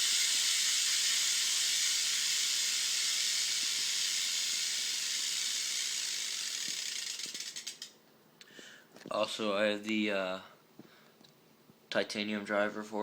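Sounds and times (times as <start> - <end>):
bicycle freewheel ratchet buzzing: 0.0 - 8.0.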